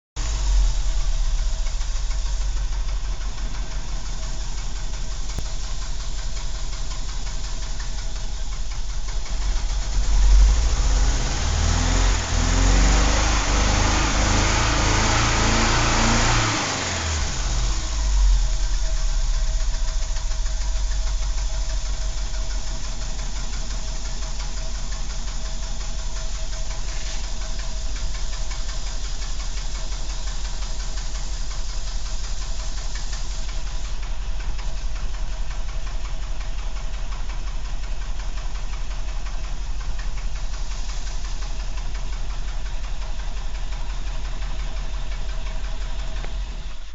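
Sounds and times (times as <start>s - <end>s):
car engine idling and revving: 0.2s - 46.9s.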